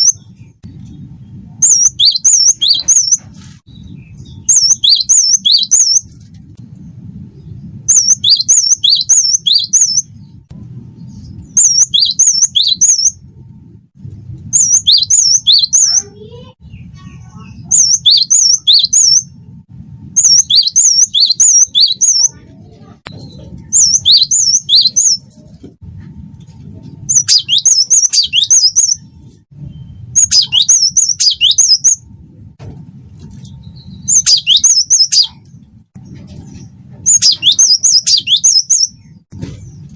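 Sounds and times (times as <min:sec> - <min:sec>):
low steady hum: 0:00.0 - 0:39.9.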